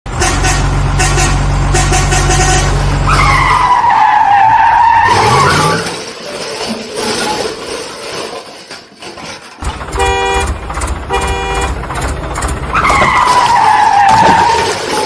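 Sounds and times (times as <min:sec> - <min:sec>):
vehicle engine running: 0:00.1 - 0:03.3, 0:09.6 - 0:13.8
tyre squealing: 0:03.1 - 0:07.9, 0:12.7 - 0:15.0.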